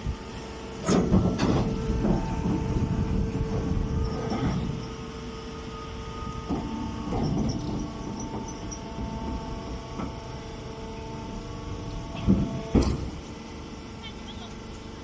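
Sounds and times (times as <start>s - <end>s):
hay baler machine hum: 0.0s - 15.0s
machine knocks and clanks: 0.8s - 4.9s, 6.4s - 10.2s, 12.0s - 13.3s.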